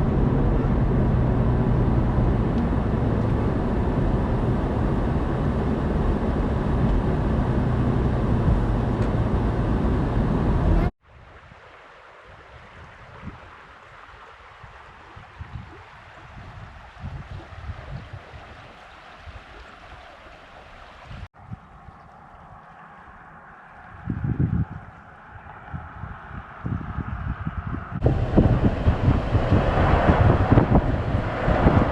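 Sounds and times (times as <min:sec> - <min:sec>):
vehicle road and engine drone: 0:00.0 - 0:11.0, 0:21.3 - 0:31.9.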